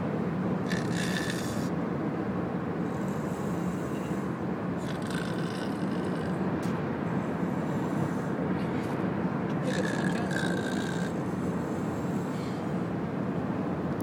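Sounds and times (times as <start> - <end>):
man snoring: 0.7 - 1.7, 4.8 - 6.4, 9.6 - 11.2.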